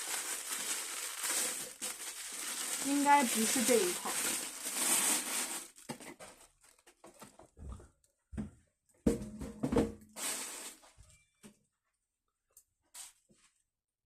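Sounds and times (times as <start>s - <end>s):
packing material rustling: 0.0s - 7.3s, 10.2s - 10.9s.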